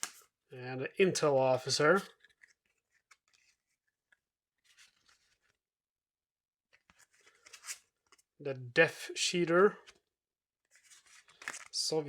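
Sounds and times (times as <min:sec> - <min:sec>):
game cards being handled: 0:02.1 - 0:05.6, 0:06.7 - 0:08.3, 0:10.7 - 0:12.0.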